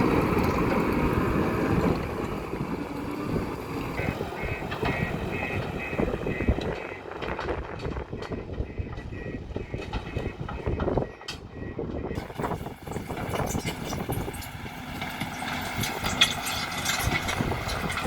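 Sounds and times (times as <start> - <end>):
loader engine rumbling: 0.0 - 18.0
machine clanks and knocks: 7.2 - 18.0
high pulsing beep: 8.2 - 12.2.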